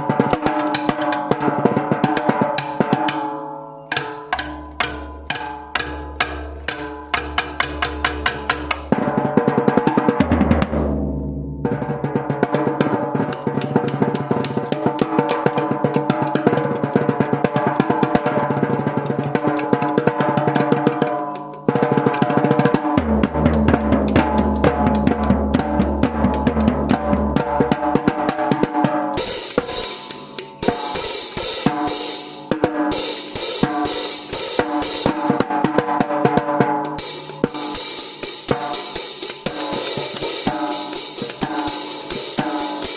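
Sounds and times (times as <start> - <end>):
rapid bass drum strokes: 6.1 - 17.3, 21.7 - 42.9
heavy metal drumming: 6.1 - 20.8, 21.7 - 42.9
cymbals crashing: 29.2 - 35.6, 36.9 - 42.9.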